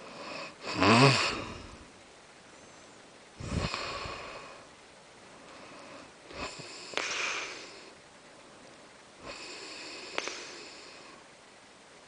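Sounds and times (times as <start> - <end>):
person snoring: 0.0 - 1.8, 3.4 - 4.6, 6.3 - 7.9, 9.2 - 11.2
sharp click: 10.1 - 10.5.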